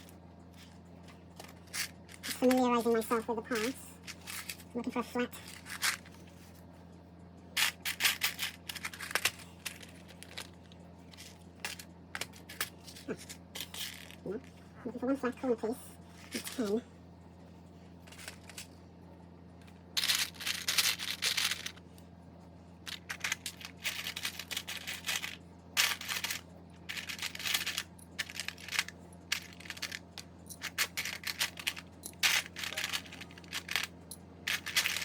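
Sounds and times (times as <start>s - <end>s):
steady low hum: 0.0s - 35.0s
plastic bricks clattering: 20.0s - 21.8s, 22.9s - 30.0s, 30.6s - 33.9s, 34.5s - 35.0s.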